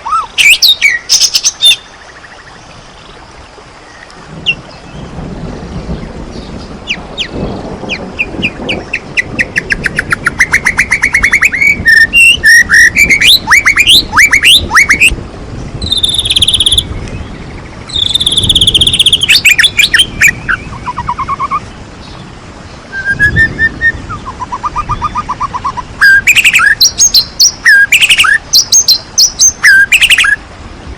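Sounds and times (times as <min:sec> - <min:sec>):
songbird singing varied song: 0:00.0 - 0:30.9.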